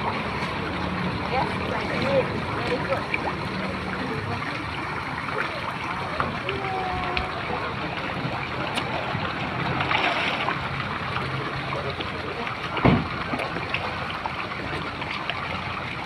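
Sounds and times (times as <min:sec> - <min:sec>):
trickling water at a pond: 0:00.0 - 0:16.0
short loud thump: 0:12.8 - 0:13.1.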